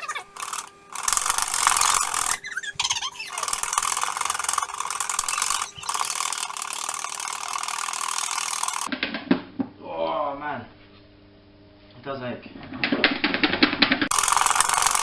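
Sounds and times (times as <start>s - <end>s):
whisk whirring and rattling: 0.0s - 8.9s, 14.1s - 15.0s.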